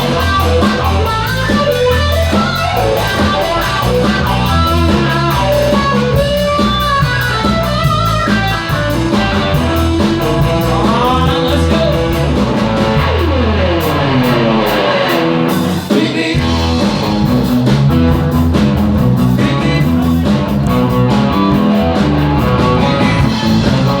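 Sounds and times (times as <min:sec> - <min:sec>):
rock and roll band playing: 0:00.0 - 0:24.0
falling pitch sweep: 0:11.5 - 0:15.8.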